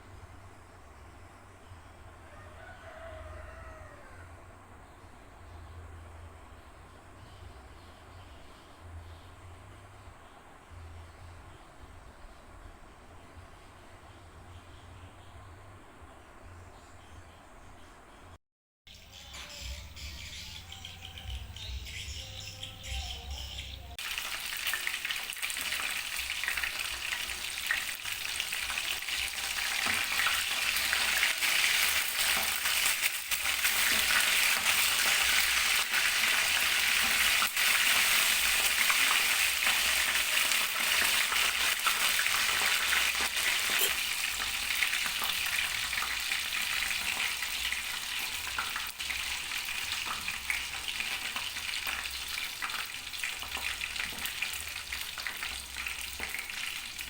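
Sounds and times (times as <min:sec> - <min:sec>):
food sizzling in hot oil: 0:24.0 - 0:57.0.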